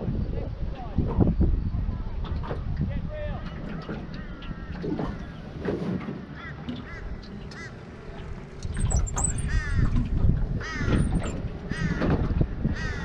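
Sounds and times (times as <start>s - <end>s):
wind rumble on microphone: 0.0s - 13.0s
bird harsh crow-like calls: 6.3s - 7.9s, 9.2s - 10.0s, 10.6s - 13.0s.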